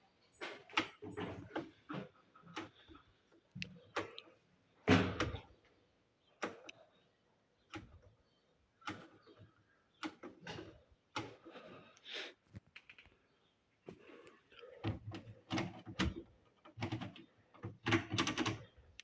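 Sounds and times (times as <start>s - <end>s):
sharp clicks and knocks: 8.8s - 11.6s, 14.8s - 19.0s.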